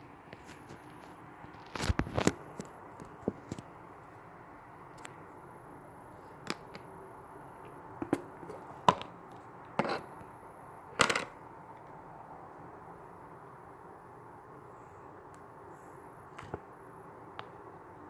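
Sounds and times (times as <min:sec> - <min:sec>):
noisy handling sounds: 0:00.3 - 0:04.2, 0:07.6 - 0:12.0, 0:16.3 - 0:17.6.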